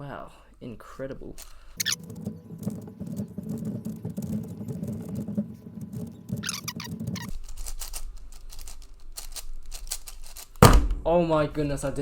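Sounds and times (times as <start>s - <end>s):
puzzle cube clicking and rattling: 1.4s - 10.6s.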